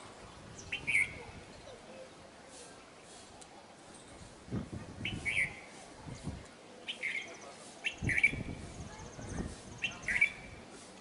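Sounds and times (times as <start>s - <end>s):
starling harsh chirping calls: 0.6s - 1.8s, 5.0s - 5.7s, 6.8s - 10.6s.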